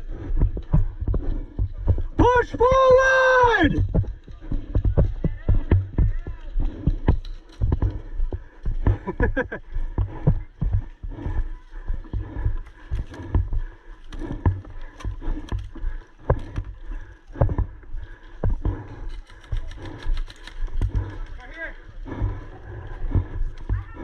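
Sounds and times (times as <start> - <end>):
footsteps and gear knocking: 0.0 - 24.0
sharp clicks: 18.5 - 21.6.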